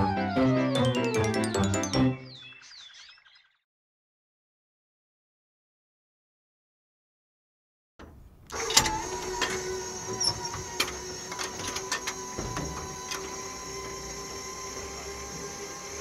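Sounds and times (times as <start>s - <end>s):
sharp knocks and rattles: 8.0s - 14.3s
motor mechanical whine: 8.5s - 16.0s.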